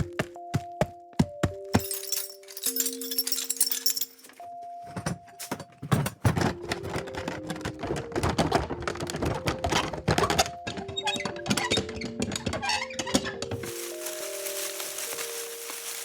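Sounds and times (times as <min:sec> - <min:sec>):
rapid knocks taps and clicks: 0:06.3 - 0:13.6
held musical tones: 0:10.3 - 0:16.0.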